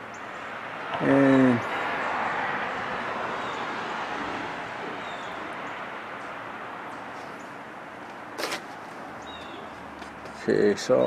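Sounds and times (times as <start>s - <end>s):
bird chirping: 4.9s - 6.3s, 9.1s - 10.4s.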